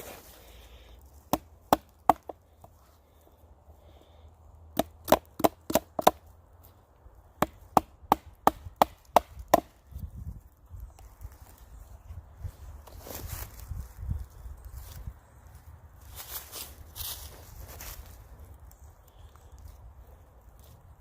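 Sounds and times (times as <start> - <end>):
chopping blows on wood: 1.3 - 2.4, 4.7 - 6.2, 7.4 - 9.8.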